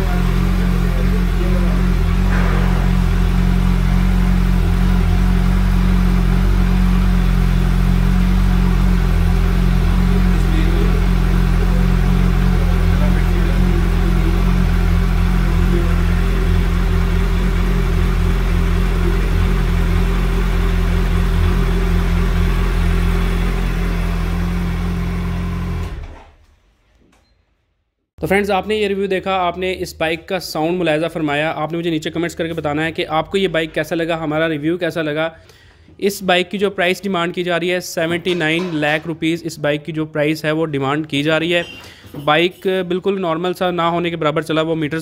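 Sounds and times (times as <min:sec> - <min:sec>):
motorcycle engine running: 0:00.0 - 0:26.2.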